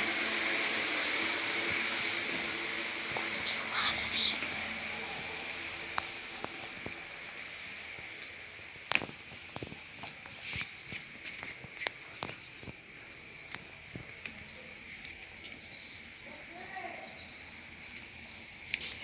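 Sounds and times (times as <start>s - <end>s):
high insect chirring: 0.0s - 8.9s.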